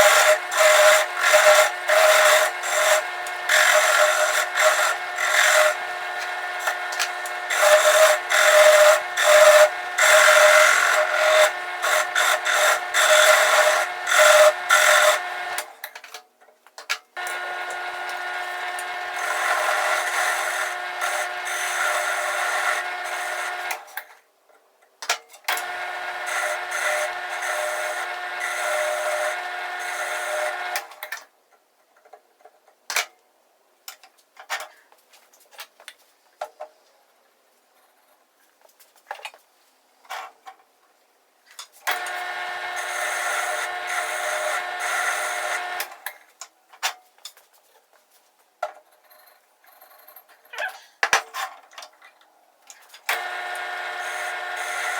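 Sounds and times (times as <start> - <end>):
power tool rasping wood: 0.0 - 15.7, 17.2 - 23.9, 25.6 - 31.0, 41.9 - 46.0, 53.1 - 54.9.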